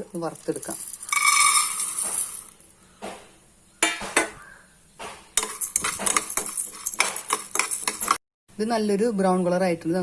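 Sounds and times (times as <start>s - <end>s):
spoon scraping lentils in a pan: 0.1s - 2.6s, 5.3s - 8.2s.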